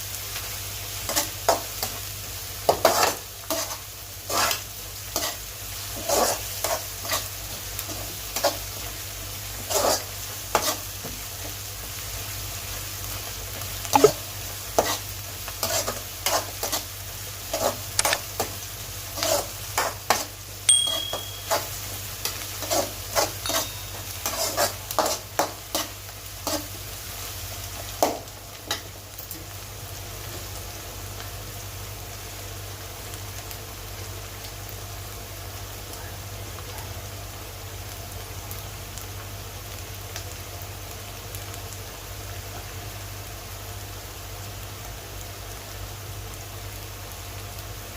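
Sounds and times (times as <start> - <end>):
meat sizzling in a pan: 0.0 - 47.9
spatula scraping a pan: 1.0 - 2.0, 2.7 - 8.8, 9.5 - 11.0, 14.0 - 20.4, 21.5 - 26.9.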